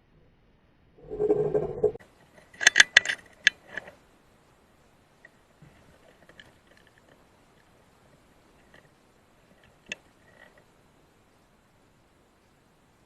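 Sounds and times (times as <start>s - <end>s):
faint ticks: 5.2s - 10.8s.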